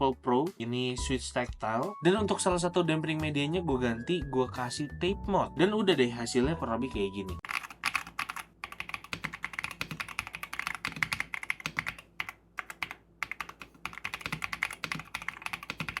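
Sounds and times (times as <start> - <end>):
fast mechanical keyboard typing: 7.4 - 16.0.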